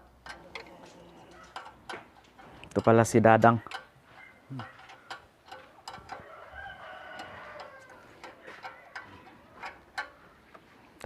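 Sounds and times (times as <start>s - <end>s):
rooster crowing faintly: 6.1s - 10.4s.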